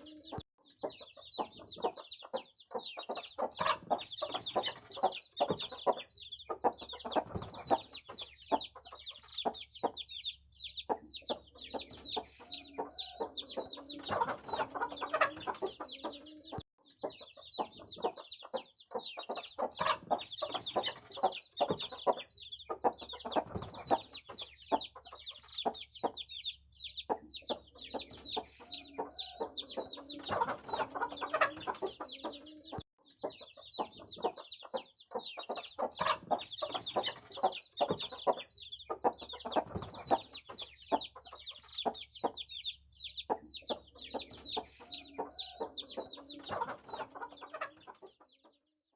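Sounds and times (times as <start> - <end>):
chicks peeping: 0.0 - 48.6
lower clucking calls: 10.8 - 26.2, 27.0 - 42.4.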